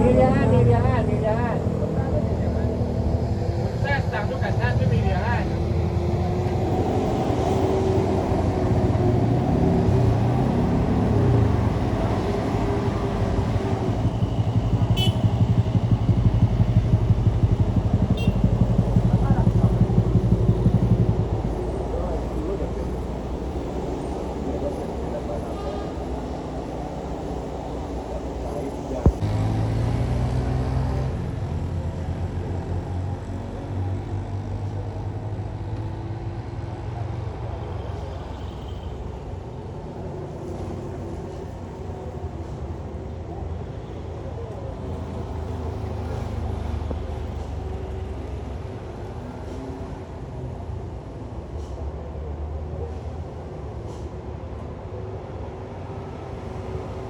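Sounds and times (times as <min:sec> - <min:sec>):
vehicle engine running hard: 0:00.0 - 0:38.1
vehicle engine running: 0:08.2 - 0:25.4.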